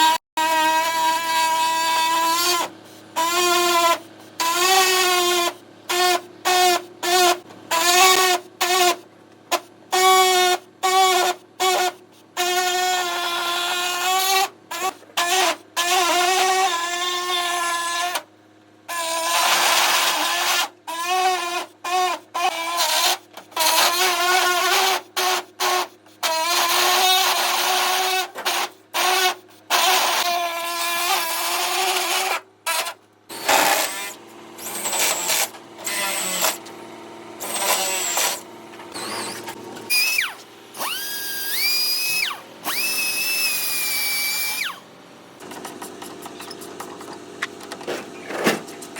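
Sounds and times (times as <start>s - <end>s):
power tool motor whine: 18.9s - 48.9s.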